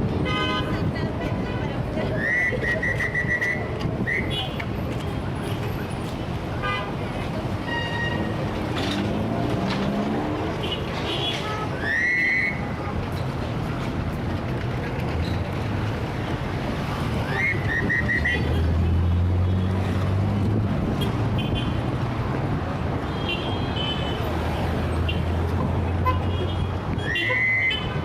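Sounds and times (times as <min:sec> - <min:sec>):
street traffic noise: 0:00.0 - 0:28.0
car horn: 0:26.0 - 0:28.0.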